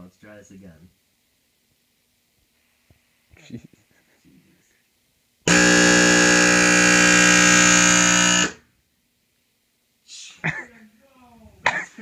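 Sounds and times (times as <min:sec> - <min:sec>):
subwoofer mains hum-buzz: 0:05.5 - 0:08.8.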